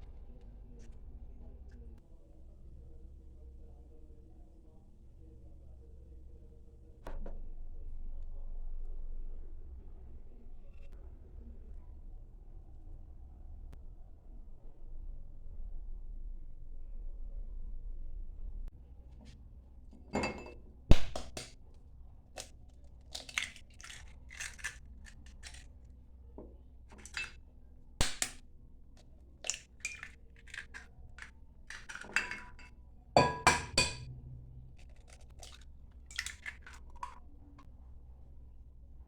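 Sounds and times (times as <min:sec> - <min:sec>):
clinks of bowls and utensils: 0:20.1 - 0:20.6, 0:26.9 - 0:27.4, 0:29.4 - 0:34.1.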